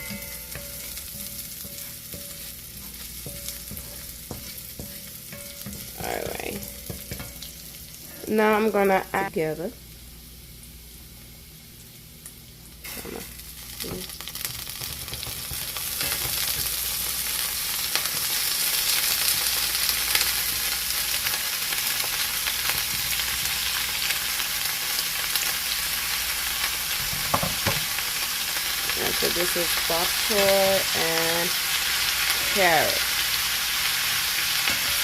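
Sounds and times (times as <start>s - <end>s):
knocks and stirring in pot: 0.0s - 7.5s, 13.9s - 16.8s, 27.0s - 27.9s
vegetables sizzling in oil: 0.0s - 35.0s.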